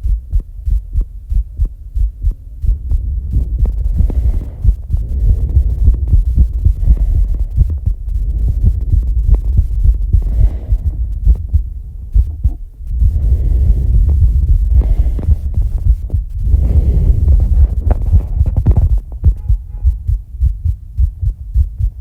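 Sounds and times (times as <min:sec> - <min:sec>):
fast heartbeat thuds: 0:00.0 - 0:22.0
heavy breathing: 0:02.6 - 0:20.2.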